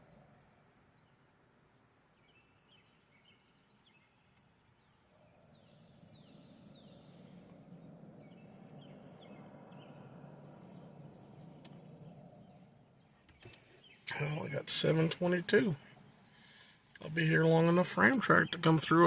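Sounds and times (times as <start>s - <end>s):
bird chirping: 0.0s - 19.0s
low rumble: 5.2s - 13.3s
downward-sweeping whistles: 5.4s - 13.1s.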